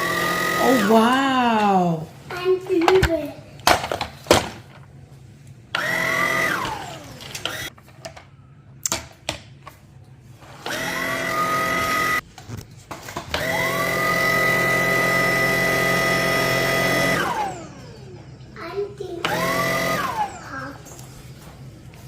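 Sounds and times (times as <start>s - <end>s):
handheld vacuum cleaner whine: 0.0s - 1.1s, 5.7s - 7.7s, 10.6s - 12.2s, 13.3s - 18.2s, 19.2s - 20.4s.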